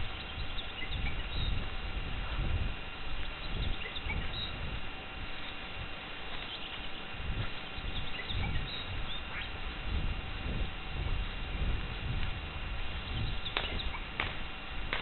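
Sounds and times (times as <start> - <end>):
small birds chirping faintly: 0.0 - 15.0
low thuds and rustling: 9.8 - 15.0.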